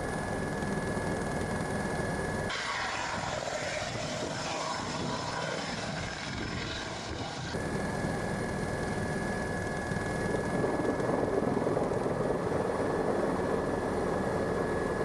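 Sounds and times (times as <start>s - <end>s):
helicopter rotors and turbine whine: 0.0s - 15.0s
hiss: 2.5s - 7.6s.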